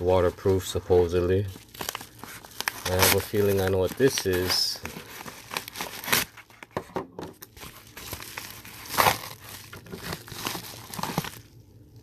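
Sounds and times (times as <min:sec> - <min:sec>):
packaging crinkling and tearing: 0:00.0 - 0:06.8, 0:07.4 - 0:12.0.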